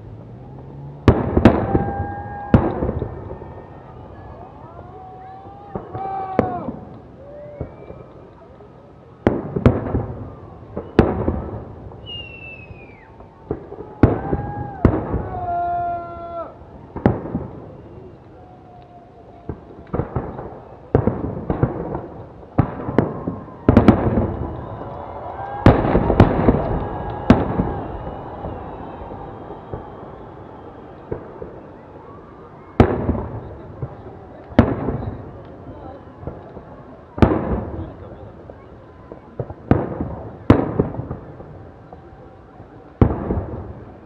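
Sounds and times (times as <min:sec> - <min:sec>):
fireworks bangs: 0:00.0 - 0:08.4, 0:09.1 - 0:18.3, 0:19.2 - 0:44.0
falling firework whistle: 0:00.4 - 0:08.3, 0:09.9 - 0:19.6, 0:22.8 - 0:33.3.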